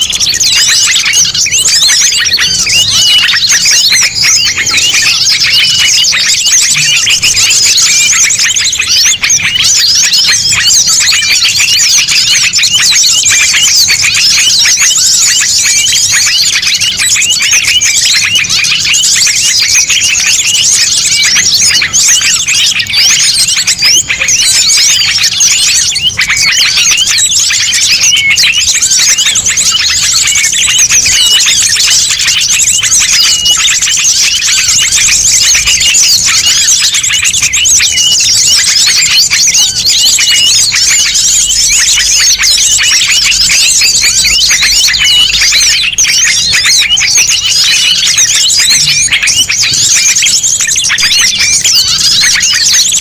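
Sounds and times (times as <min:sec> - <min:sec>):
small songbirds chirping: 0:00.0 - 0:53.0.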